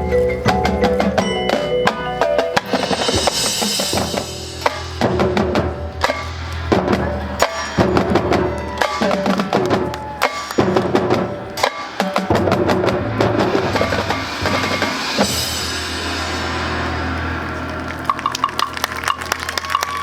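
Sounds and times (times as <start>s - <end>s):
marching band playing: 0.0s - 20.0s
cymbal crash: 2.7s - 6.6s, 13.4s - 18.6s.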